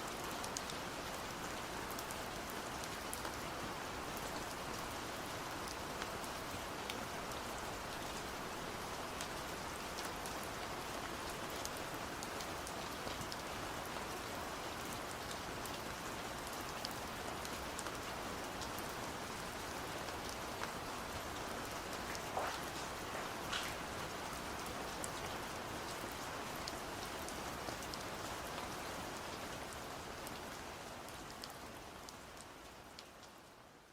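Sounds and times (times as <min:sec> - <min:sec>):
steady rain falling: 0:00.0 - 0:33.9
loud water drips: 0:21.8 - 0:24.7.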